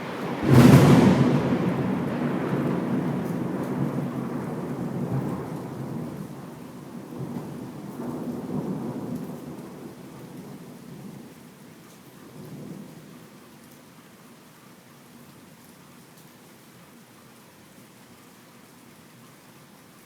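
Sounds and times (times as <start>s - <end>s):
rolling thunder: 0.0s - 11.3s
rain falling: 0.0s - 20.0s.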